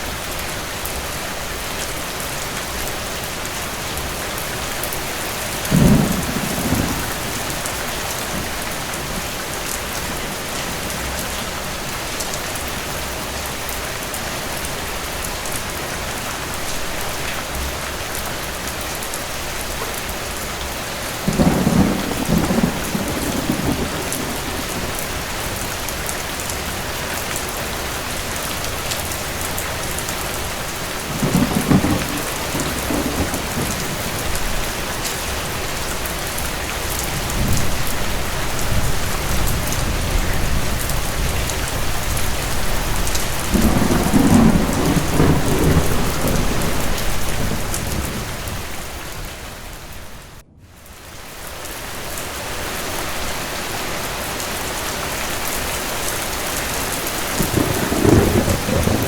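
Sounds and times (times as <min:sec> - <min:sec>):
heavy rain: 0:00.0 - 0:59.0
distant thunder rumbling: 0:05.5 - 0:11.9, 0:21.2 - 0:26.9, 0:29.3 - 0:52.0, 0:57.0 - 0:59.0.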